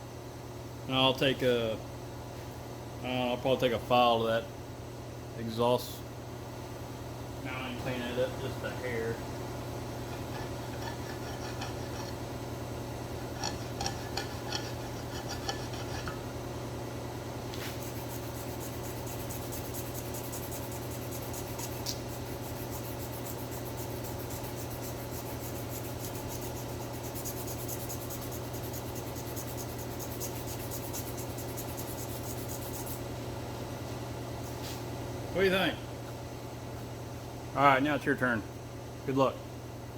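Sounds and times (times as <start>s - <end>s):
steady low hum: 0.0s - 39.9s
metal file rasping on metal: 10.0s - 12.2s, 13.2s - 16.2s, 17.7s - 33.1s.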